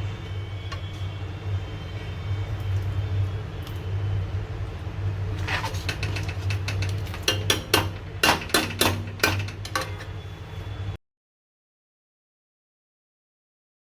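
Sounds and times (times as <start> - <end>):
metal utensils clinking: 5.5 - 10.2.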